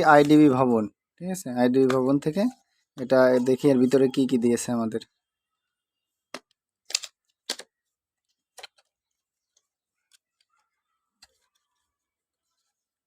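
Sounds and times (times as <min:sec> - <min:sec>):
sharp clicks and taps on a box: 0:06.3 - 0:07.8.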